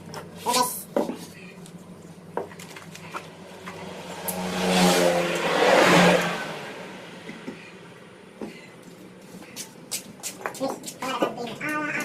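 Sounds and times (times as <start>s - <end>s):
vehicle engine passing by: 2.8s - 8.3s.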